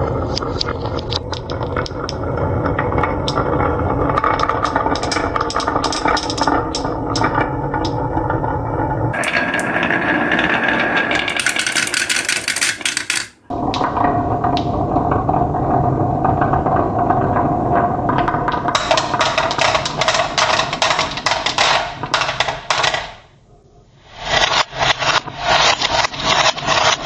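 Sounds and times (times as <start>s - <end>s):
marbles rolling on a track: 0.4s - 8.0s, 9.1s - 15.2s, 15.8s - 23.1s.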